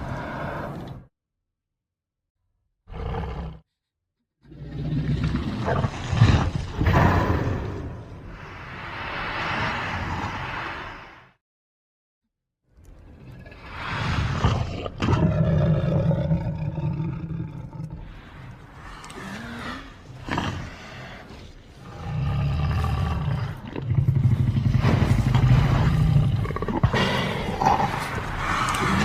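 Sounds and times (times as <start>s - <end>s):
dinosaur roar: 13.4s - 29.0s.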